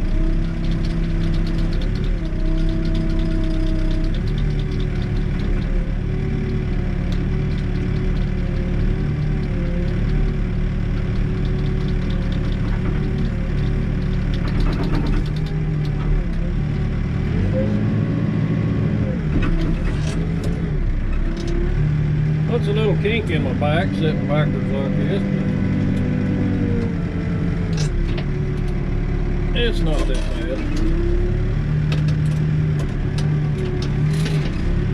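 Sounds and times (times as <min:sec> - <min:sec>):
backhoe diesel engine running: 0:00.0 - 0:34.9
short clatter: 0:11.0 - 0:16.4.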